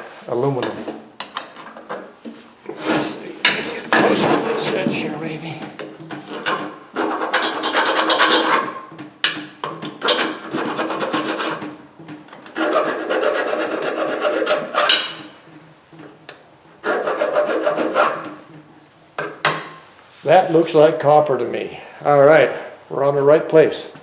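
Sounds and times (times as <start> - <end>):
tool rasping on metal wire: 6.2 - 8.7, 12.6 - 15.2.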